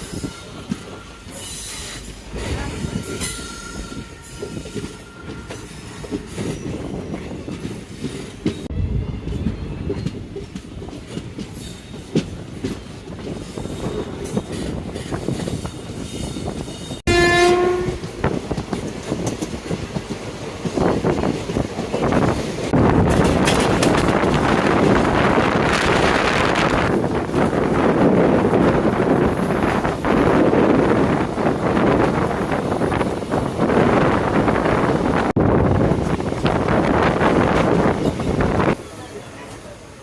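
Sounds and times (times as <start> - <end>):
train rumbling on track: 0.0 - 40.0
locomotive horn: 2.5 - 6.2, 17.1 - 18.1.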